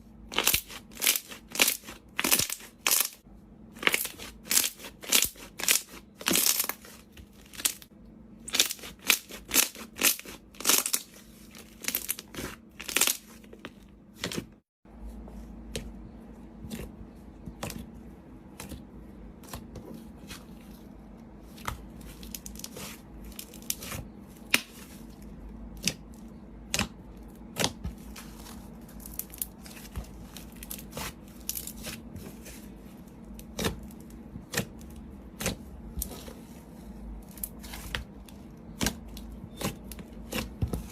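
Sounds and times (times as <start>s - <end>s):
slime crackling and popping: 11.8s - 13.3s.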